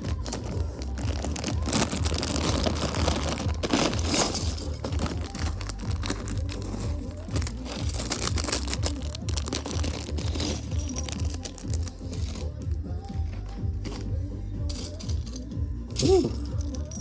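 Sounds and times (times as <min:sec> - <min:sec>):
plastic bag crinkling: 0:00.0 - 0:12.5
background music: 0:00.0 - 0:17.0.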